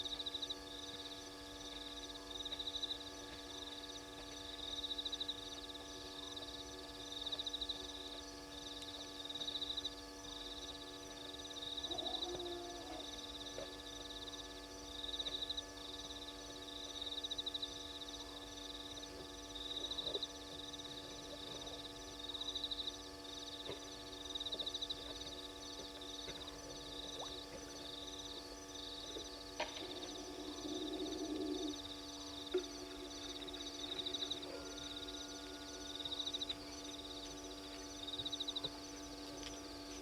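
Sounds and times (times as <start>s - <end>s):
steady electrical hum: 0.0s - 40.0s
lower pulsed animal call: 11.6s - 13.8s, 26.3s - 38.5s.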